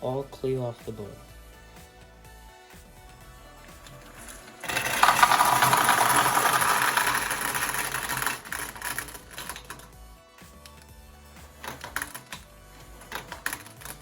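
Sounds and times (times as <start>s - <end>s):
marbles clattering on plastic: 3.7s - 9.9s, 11.4s - 14.0s.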